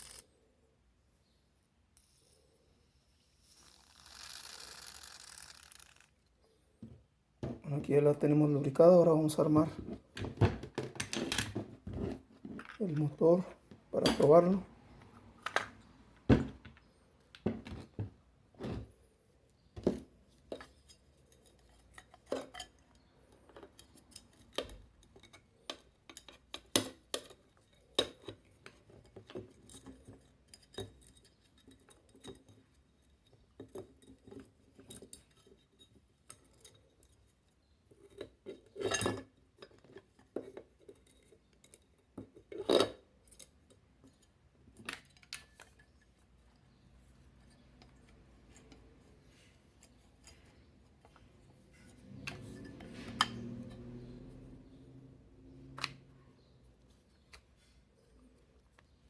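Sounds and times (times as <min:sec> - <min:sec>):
metal motor parts clinking: 0:51.7 - 0:54.5.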